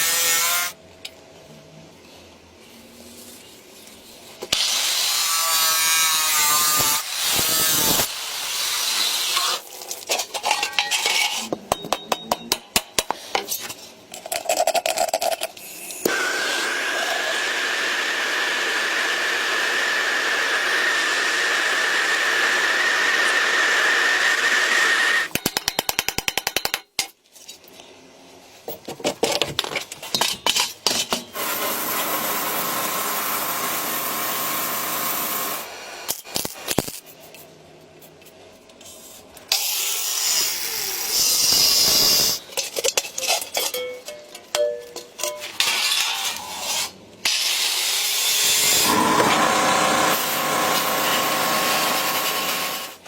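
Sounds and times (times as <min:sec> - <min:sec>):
high-pitched power tool: 0:04.6 - 0:09.6, 0:16.0 - 0:25.3, 0:47.6 - 0:53.0
power tool whining on metal: 0:16.0 - 0:25.3, 0:48.0 - 0:53.0.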